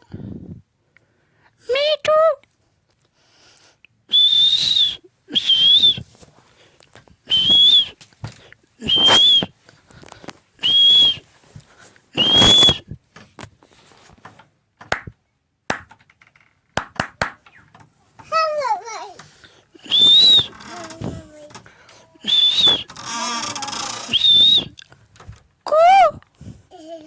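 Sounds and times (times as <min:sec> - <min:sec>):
short high whistles: 0:04.1 - 0:06.1, 0:07.3 - 0:08.0, 0:08.8 - 0:09.5, 0:10.6 - 0:11.3, 0:12.2 - 0:13.0, 0:19.8 - 0:20.7, 0:22.2 - 0:24.8.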